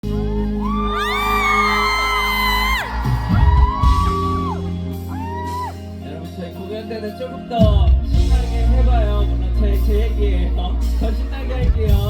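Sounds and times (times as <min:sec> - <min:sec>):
people whooping and screaming: 0:00.0 - 0:05.9
music with sustained bass notes: 0:00.0 - 0:12.0.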